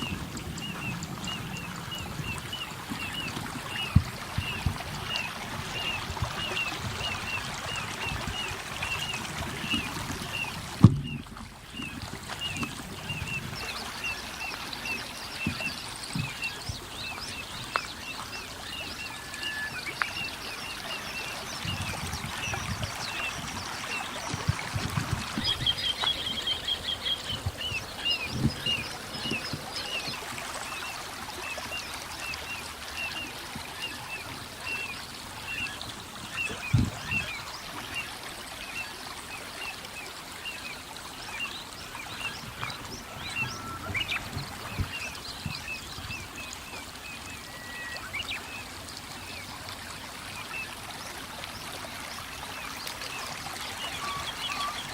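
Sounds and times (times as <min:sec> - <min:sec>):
low thumps: 0:10.8 - 0:13.6.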